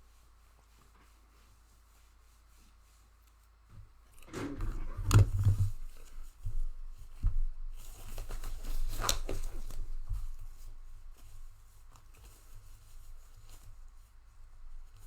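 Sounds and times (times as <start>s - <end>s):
packaging crinkling and rustling: 7.7s - 11.3s.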